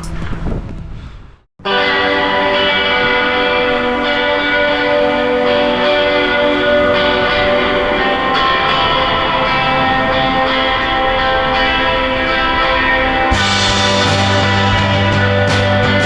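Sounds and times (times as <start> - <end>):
chiming guitar tones: 1.6 - 16.0
bass line: 13.2 - 16.0.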